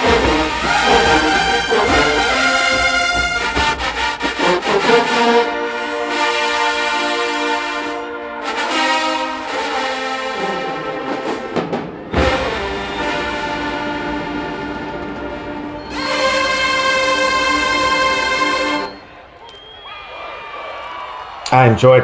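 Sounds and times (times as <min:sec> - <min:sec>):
sharp drum hit: 0:00.0 - 0:04.7
marching band brass chords: 0:00.0 - 0:19.4.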